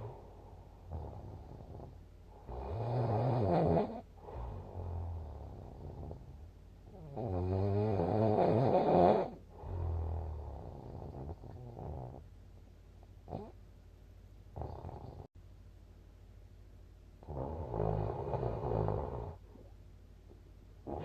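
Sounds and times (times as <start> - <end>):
person snoring: 0.9 - 12.2, 17.2 - 19.4
soft low breath: 4.1 - 6.4.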